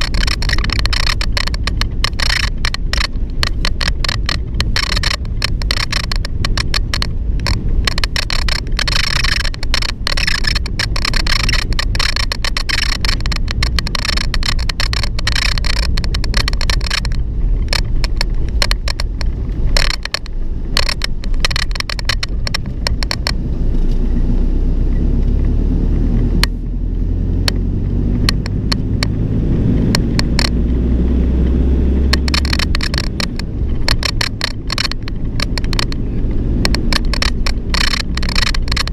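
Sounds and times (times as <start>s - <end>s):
vehicle door squeaking and rattling: 0.0s - 24.3s
engine and tyres rumbling: 0.0s - 38.9s.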